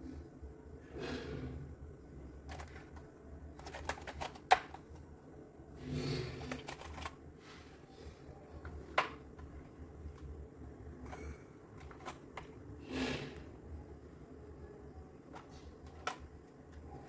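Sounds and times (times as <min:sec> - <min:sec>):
mechanical keyboard keys clacking: 0:03.6 - 0:05.0.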